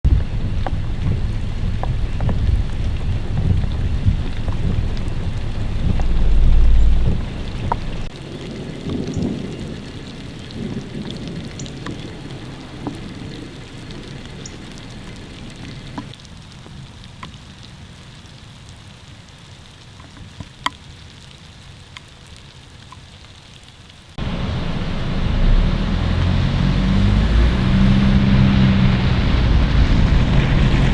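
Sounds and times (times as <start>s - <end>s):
loud low rumble: 0.0s - 8.1s, 24.2s - 30.9s
rain falling: 0.0s - 30.9s
sharp drips: 0.3s - 24.2s.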